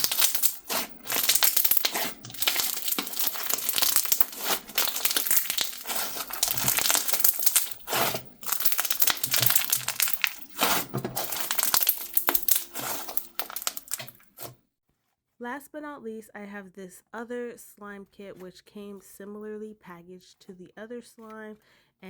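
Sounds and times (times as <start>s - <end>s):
slime crackling and popping: 0.0s - 14.5s.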